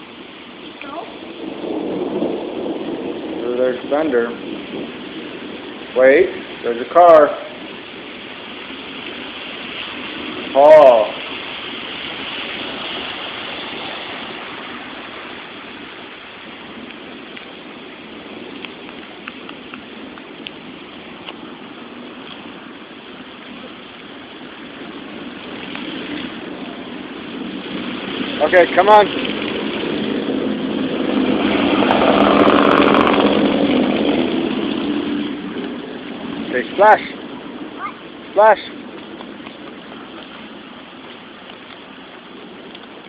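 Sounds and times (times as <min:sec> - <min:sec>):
water rushing: 0:00.0 - 0:18.1, 0:18.7 - 0:43.0
car passing on wet road: 0:00.0 - 0:43.0
dripping ticks: 0:18.5 - 0:20.6, 0:38.9 - 0:43.0.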